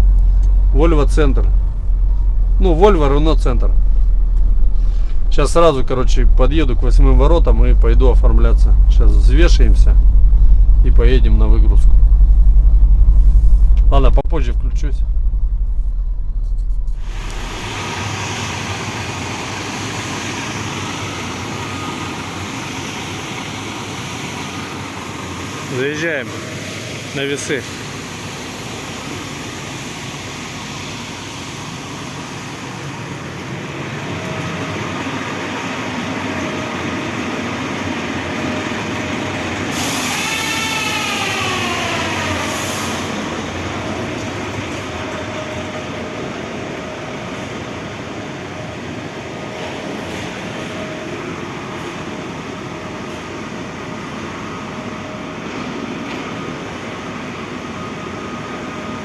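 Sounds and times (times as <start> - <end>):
semi-truck rumbling: 0.0 - 59.0
short air hisses: 39.7 - 41.1
squeal falling and rising: 39.9 - 43.2.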